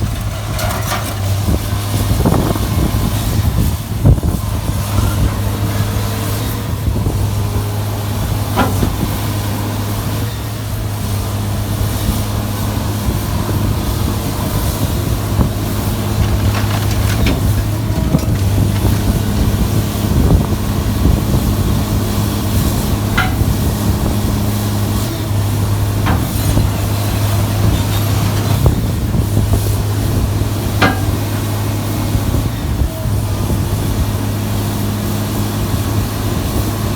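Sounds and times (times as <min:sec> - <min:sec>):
metal baler humming: 0:00.0 - 0:36.9
sharp metal knocks: 0:23.1 - 0:23.6, 0:30.8 - 0:31.3.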